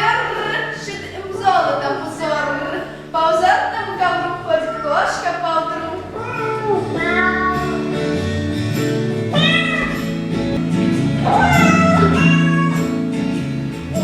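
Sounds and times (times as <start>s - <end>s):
cat meowing: 4.6s - 5.2s, 5.9s - 8.0s, 9.3s - 10.3s, 11.2s - 13.0s
backing music: 6.8s - 14.0s.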